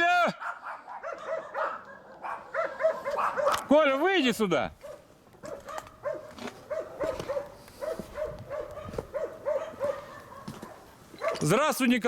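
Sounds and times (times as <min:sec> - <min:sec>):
dog barking: 0:00.3 - 0:03.7, 0:04.8 - 0:11.6.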